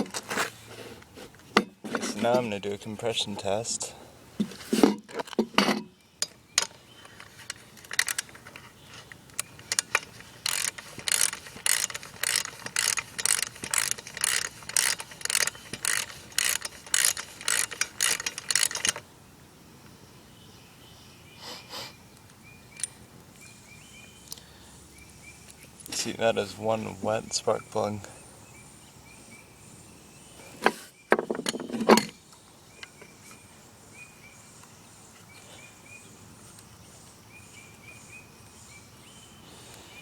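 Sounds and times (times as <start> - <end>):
recoil starter pulls: 9.3 - 19.0.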